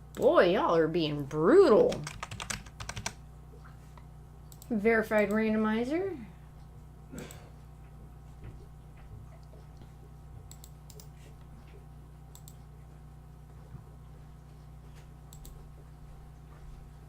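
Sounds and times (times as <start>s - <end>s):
steady low hum: 0.0s - 17.0s
sharp computer clicks: 1.9s - 3.2s, 4.5s - 5.5s, 10.5s - 11.1s, 12.3s - 12.6s, 15.3s - 15.6s.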